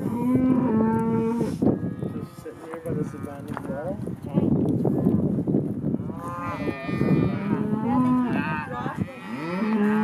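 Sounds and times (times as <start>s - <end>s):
cattle mooing: 0.0s - 3.5s, 6.1s - 10.0s.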